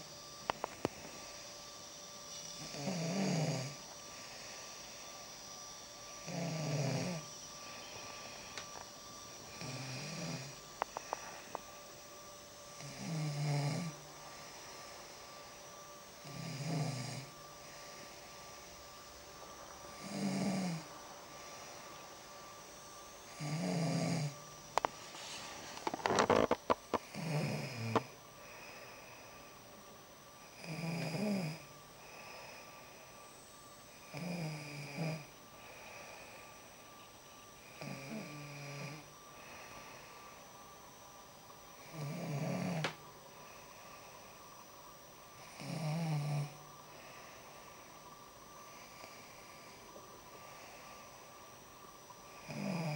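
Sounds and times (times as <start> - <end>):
woman snoring: 2.6 - 5.0, 6.2 - 8.8, 9.4 - 11.6, 12.8 - 14.9, 16.2 - 18.0, 20.0 - 20.9, 23.3 - 24.9, 25.8 - 29.4, 30.5 - 32.7, 34.0 - 36.5, 37.6 - 40.1, 41.8 - 43.0, 45.4 - 47.4, 52.3 - 52.9
soft breathing: 7.2 - 12.1, 27.8 - 29.8, 32.0 - 33.3, 35.3 - 37.8, 39.0 - 40.9, 46.5 - 51.6.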